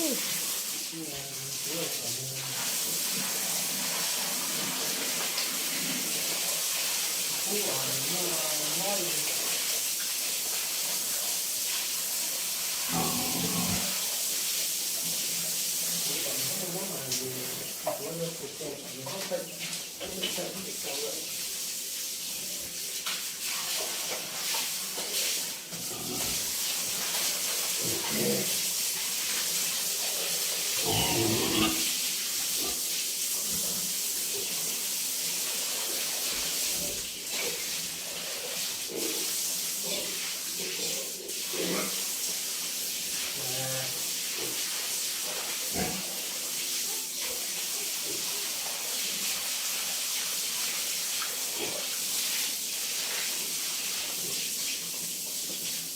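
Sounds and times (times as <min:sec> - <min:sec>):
spraying water hiss: 0:00.0 - 0:55.9
pigs grunting and squealing: 0:12.9 - 0:14.0, 0:25.8 - 0:26.5, 0:27.8 - 0:28.6, 0:30.8 - 0:31.9, 0:45.7 - 0:46.1.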